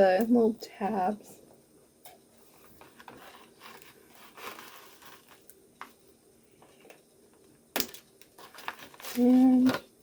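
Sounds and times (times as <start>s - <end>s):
packaging rustling: 2.6s - 6.0s, 7.8s - 9.8s.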